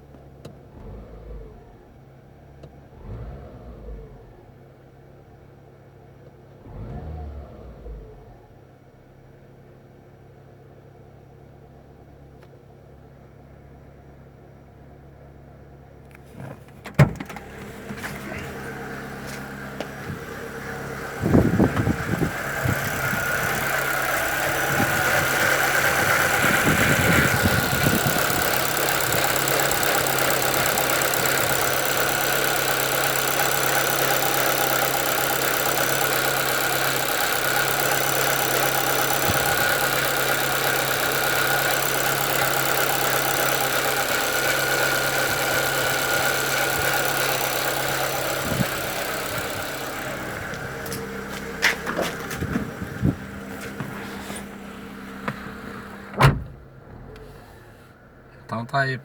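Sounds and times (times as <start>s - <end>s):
car engine idling: 10.7s - 59.0s
engine whine: 16.1s - 58.7s.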